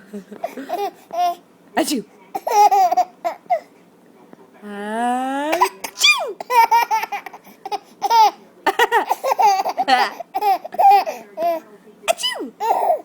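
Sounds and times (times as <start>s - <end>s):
baby laughing: 0.4s - 1.4s, 2.4s - 3.7s, 5.5s - 11.6s, 12.6s - 13.0s
baby squealing: 5.9s - 7.1s
woman sneezing: 12.1s - 12.5s.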